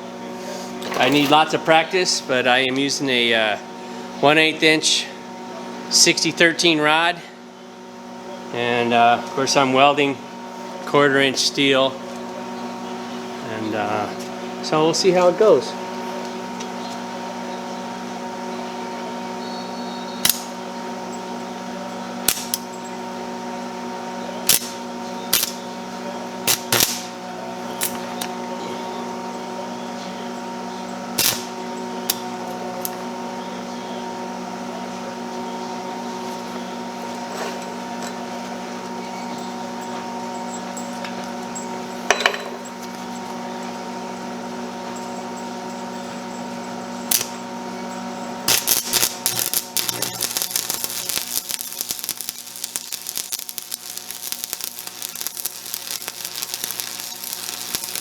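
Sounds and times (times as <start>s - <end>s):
arc welder humming: 0.0s - 58.0s
welding arc cracks and pops: 0.8s - 2.0s, 20.2s - 21.2s, 22.2s - 22.9s, 24.4s - 25.8s, 26.4s - 28.4s, 31.2s - 33.1s, 47.0s - 47.5s, 48.4s - 58.0s.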